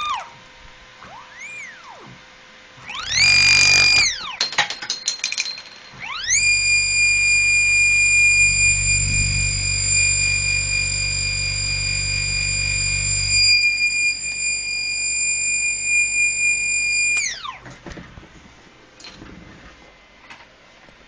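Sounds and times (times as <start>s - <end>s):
stepper motor high-pitched whine: 2.9s - 4.2s, 6.2s - 17.6s
low motor hum: 6.3s - 17.4s.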